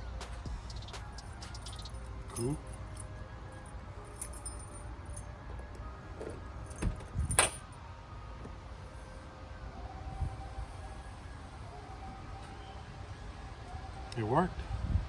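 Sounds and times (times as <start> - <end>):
car keys jangling: 0.7 - 5.3, 6.2 - 7.7
trunk latch clunks: 6.2 - 7.6.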